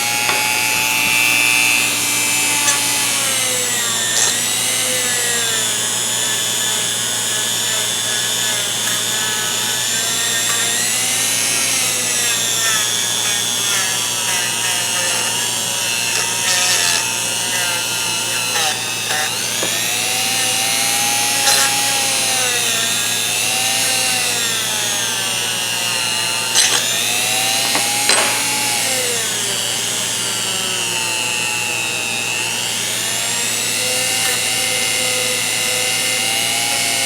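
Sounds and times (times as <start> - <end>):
rotary tool wire wheel whine: 0.0 - 29.6.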